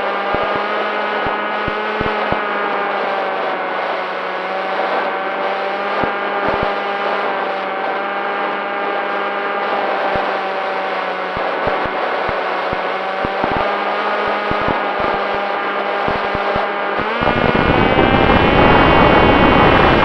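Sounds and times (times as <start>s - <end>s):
model plane motor whine: 11.4s - 20.0s.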